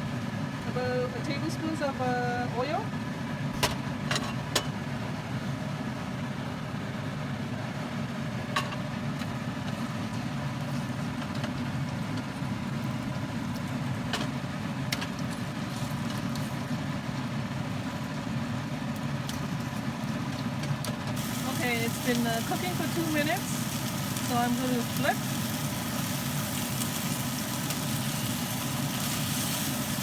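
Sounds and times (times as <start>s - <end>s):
meat sizzling in a pan: 14.5s - 30.0s.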